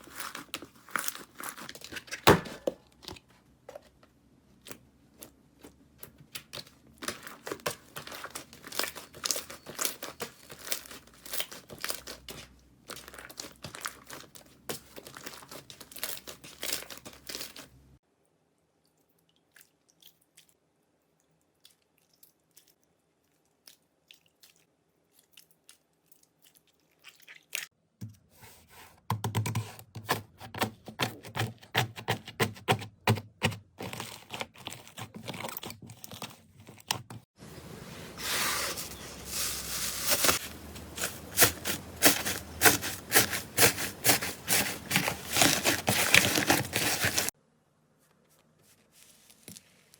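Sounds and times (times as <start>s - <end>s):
hands squishing slime: 4.6s - 17.8s, 39.2s - 47.4s.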